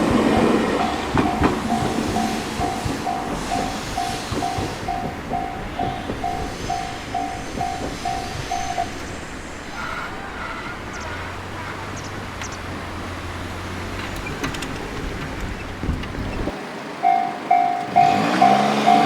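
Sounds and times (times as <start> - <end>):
rumbling vehicle noise: 0.0 - 19.0
level crossing bell ringing: 17.0 - 19.0.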